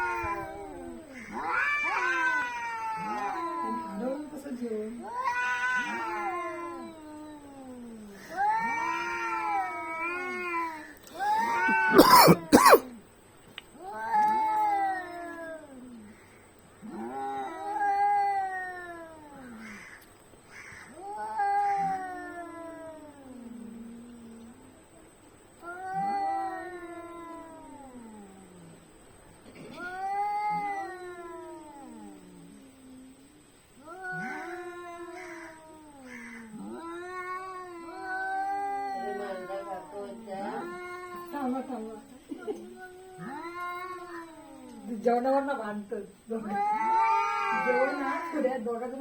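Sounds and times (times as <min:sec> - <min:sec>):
cat hissing: 0:00.0 - 0:04.0, 0:05.0 - 0:07.0, 0:07.7 - 0:12.9, 0:29.6 - 0:41.4
cats yowling: 0:00.0 - 0:12.9, 0:13.8 - 0:24.8, 0:25.6 - 0:28.8, 0:29.6 - 0:45.4, 0:46.3 - 0:49.0.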